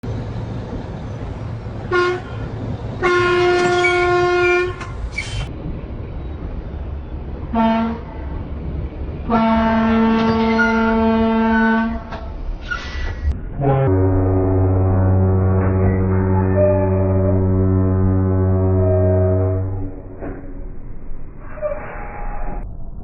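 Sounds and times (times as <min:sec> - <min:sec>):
engine and road noise: 0:00.0 - 0:18.2
truck air horn blasts: 0:01.9 - 0:04.8, 0:07.5 - 0:08.1, 0:09.3 - 0:12.1, 0:13.6 - 0:20.0.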